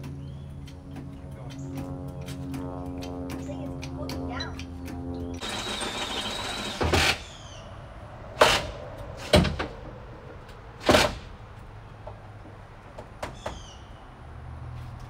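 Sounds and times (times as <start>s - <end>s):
loud bangs: 8.3s - 9.9s.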